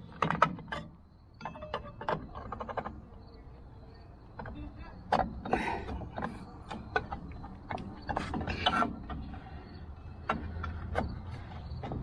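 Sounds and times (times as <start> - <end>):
metal clicks and scrapes: 4.4 - 9.4.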